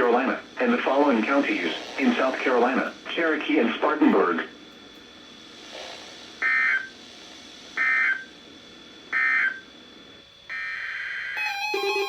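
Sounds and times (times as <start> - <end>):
shrill digital data squawk: 10.5 - 12.0.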